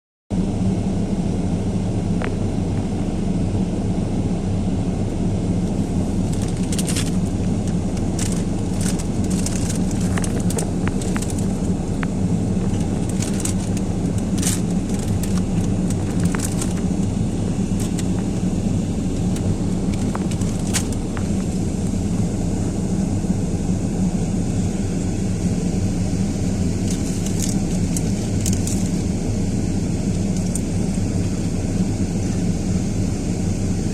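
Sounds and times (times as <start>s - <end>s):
storm wind roaring: 5.2s - 24.0s
sharp crackles and clicks: 5.7s - 22.0s, 26.8s - 29.0s, 30.1s - 30.9s.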